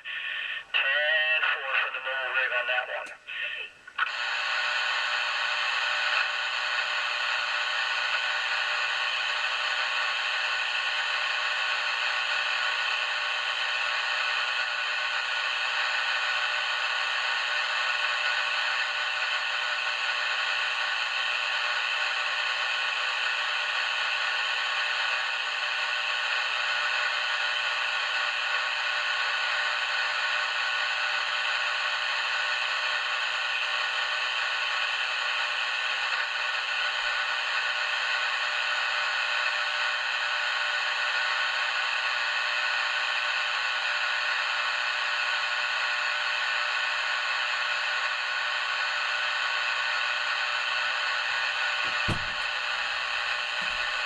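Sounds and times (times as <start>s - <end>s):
radio static hiss: 0.0s - 25.1s, 51.8s - 54.0s.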